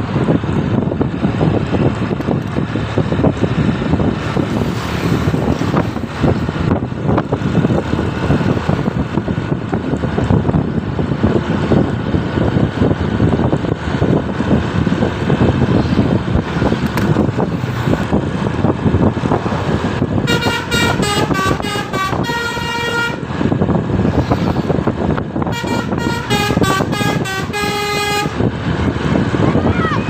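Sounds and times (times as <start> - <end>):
engine and road noise: 0.0 - 30.0
multi-tone bus horn melodies: 20.2 - 23.4, 25.4 - 28.6.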